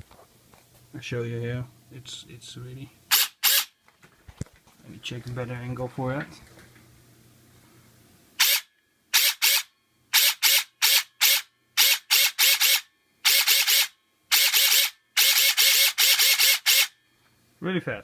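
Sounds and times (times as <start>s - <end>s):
airsoft rifle motor bursts: 3.1s - 3.8s, 8.4s - 17.0s.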